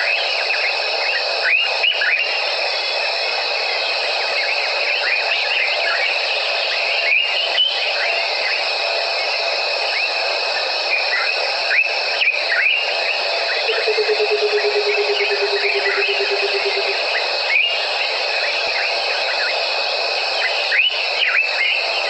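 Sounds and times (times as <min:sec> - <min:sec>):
insects shrilling: 0:10.0 - 0:19.8.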